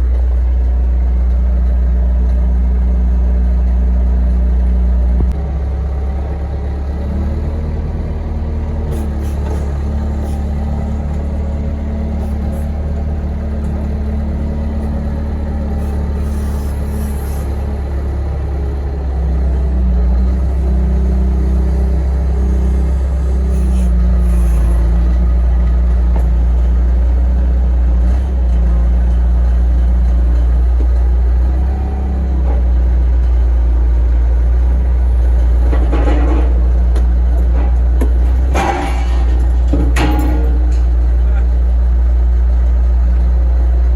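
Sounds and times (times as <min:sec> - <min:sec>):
large engine droning: 0:00.0 - 0:43.9
rattling scraping noise: 0:08.9 - 0:13.0, 0:15.7 - 0:17.7, 0:35.3 - 0:41.2.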